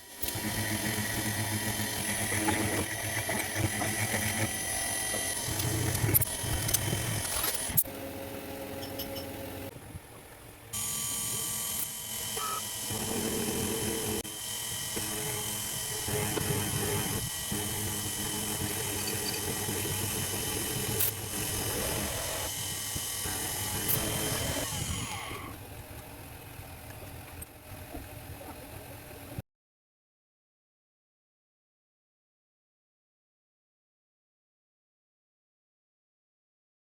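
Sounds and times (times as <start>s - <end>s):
milling machine whine: 0.0s - 9.7s, 10.7s - 25.6s.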